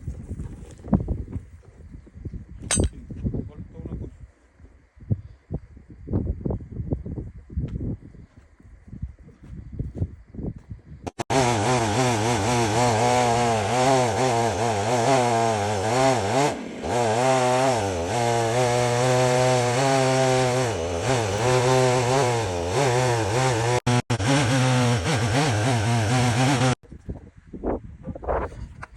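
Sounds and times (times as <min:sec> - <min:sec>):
chainsaw cutting wood: 0:11.1 - 0:26.8.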